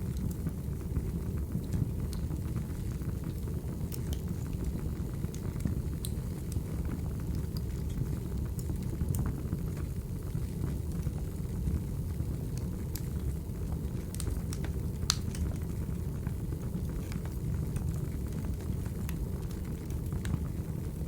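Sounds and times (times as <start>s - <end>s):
wood fire crackling: 0.0s - 21.0s
sharp pops and snaps: 6.0s - 6.6s, 14.1s - 15.6s.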